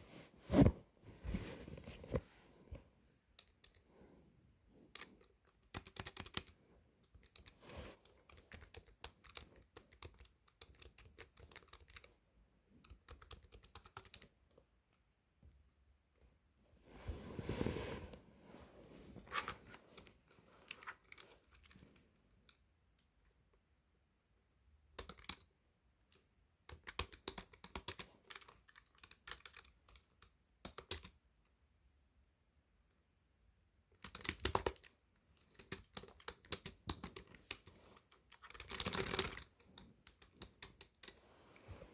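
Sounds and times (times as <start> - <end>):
keyboard typing: 5.7 - 6.5
typing on computer keyboard: 5.7 - 6.5, 8.3 - 12.1, 12.8 - 14.3, 25.0 - 25.5, 26.7 - 30.0, 30.6 - 31.2, 34.0 - 34.9, 38.3 - 39.4.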